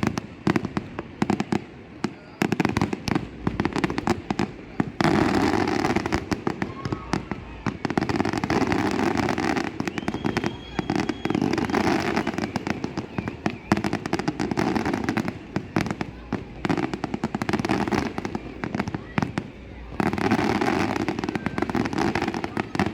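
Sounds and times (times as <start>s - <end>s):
fireworks bangs and crackling: 0.0s - 22.9s
steady high whistle: 7.7s - 15.3s.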